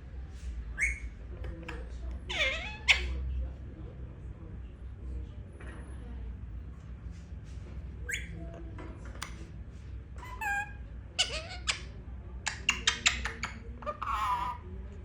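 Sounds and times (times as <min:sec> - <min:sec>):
parrot whistled calls: 0:00.8 - 0:01.1, 0:08.1 - 0:08.3.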